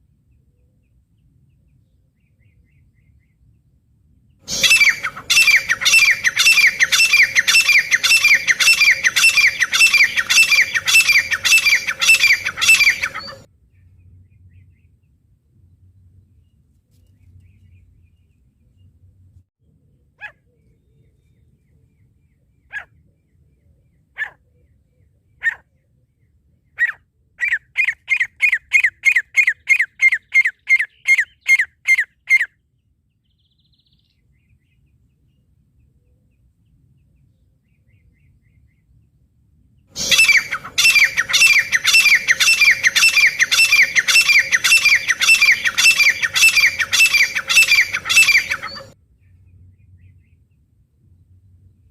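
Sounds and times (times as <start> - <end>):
francolin calling: 4.5 - 13.5, 40.0 - 49.0.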